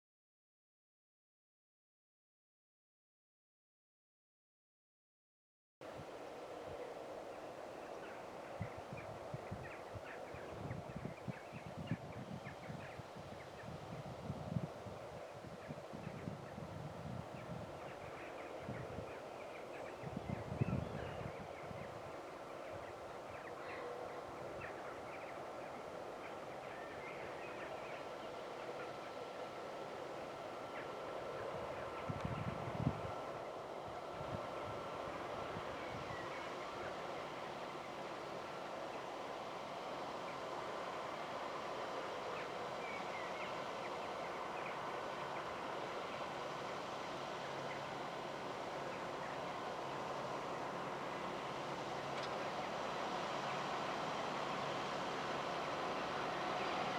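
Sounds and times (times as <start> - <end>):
faint steady hum: 5.8 - 56.9
tractor running under load: 11.7 - 56.9.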